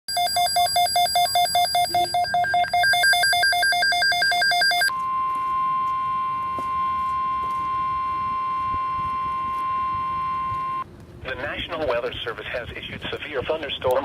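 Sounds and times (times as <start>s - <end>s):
rapid electronic beeps: 0.1s - 4.9s
steady alarm tone: 0.1s - 10.8s.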